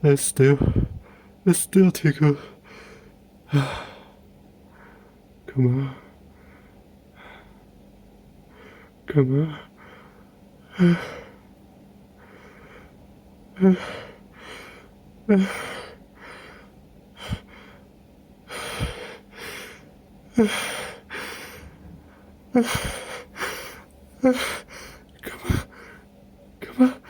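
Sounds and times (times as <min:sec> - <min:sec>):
gasping in-breaths: 0:18.5 - 0:19.8.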